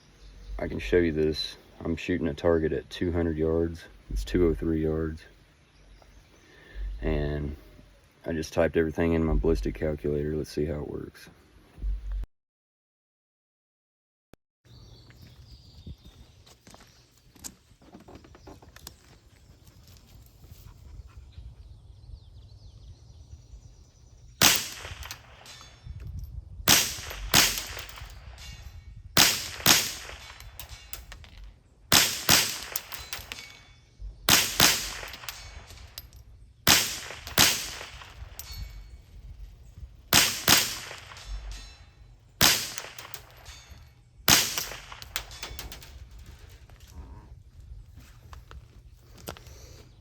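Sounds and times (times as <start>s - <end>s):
rifle shots: 24.4s - 25.8s, 26.7s - 33.7s, 34.3s - 36.1s, 36.7s - 38.7s, 40.1s - 41.8s, 42.4s - 45.9s.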